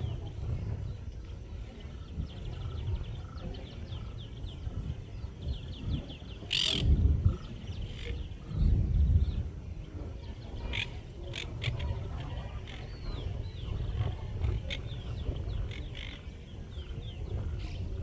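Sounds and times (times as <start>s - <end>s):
birds chirping: 0.0s - 18.0s.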